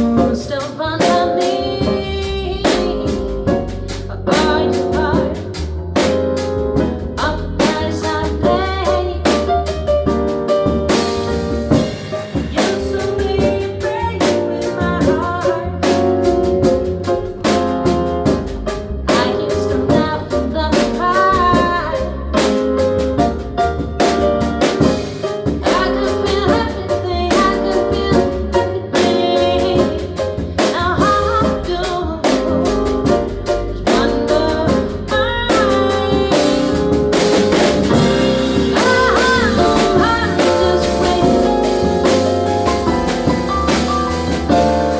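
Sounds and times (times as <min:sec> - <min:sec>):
drum kit rimshots: 0:00.0 - 0:44.9
jazz trio playing: 0:00.0 - 0:44.9
person singing: 0:38.0 - 0:42.4.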